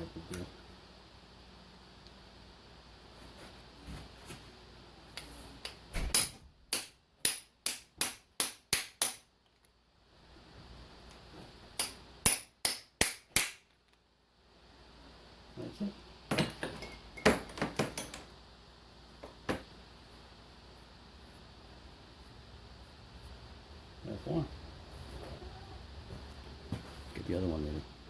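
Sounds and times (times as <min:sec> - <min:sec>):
hammer striking metal: 0:06.0 - 0:09.2, 0:11.8 - 0:13.6.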